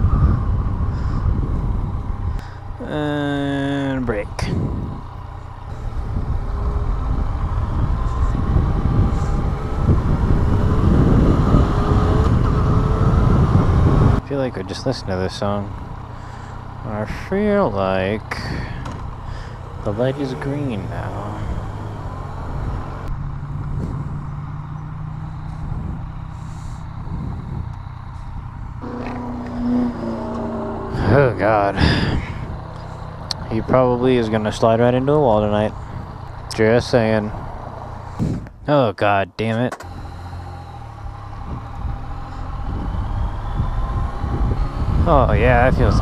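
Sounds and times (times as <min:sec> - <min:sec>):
wind buffeting microphone: 0:00.0 - 0:02.8, 0:04.2 - 0:14.2, 0:18.2 - 0:38.6, 0:41.4 - 0:46.0
motorcycle engine drone: 0:00.0 - 0:38.7, 0:39.8 - 0:46.0
road noise: 0:00.0 - 0:46.0.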